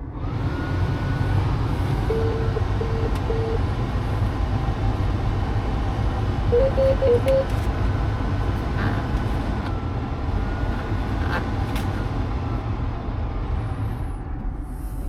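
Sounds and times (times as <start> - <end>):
diesel engine idling: 0.7 - 15.0
electronic warning beeps: 2.1 - 3.6, 6.5 - 7.6.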